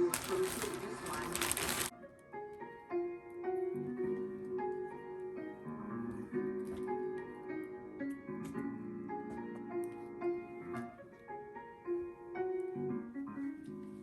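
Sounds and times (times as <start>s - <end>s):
gentle piano tune: 0.0s - 14.0s.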